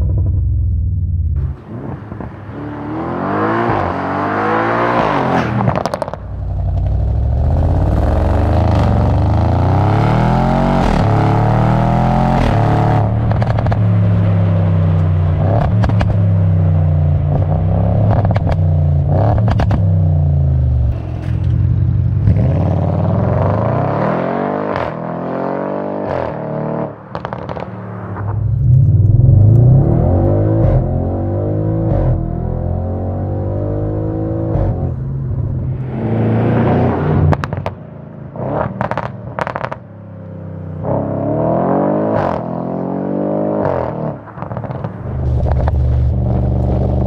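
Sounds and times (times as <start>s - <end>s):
car engine accelerating: 0.0s - 39.8s, 40.8s - 47.0s
exhaust pops and crackles: 12.3s - 21.6s, 27.1s - 31.1s, 37.3s - 37.8s, 38.6s - 39.9s, 43.7s - 47.0s.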